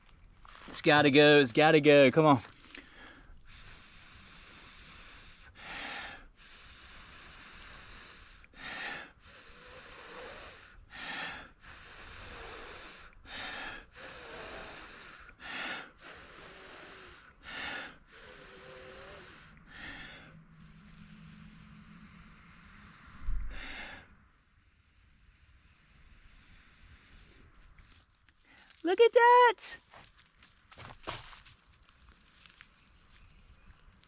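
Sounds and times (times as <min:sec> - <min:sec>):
person blowing breathy puffs: 0:02.7 - 0:28.5.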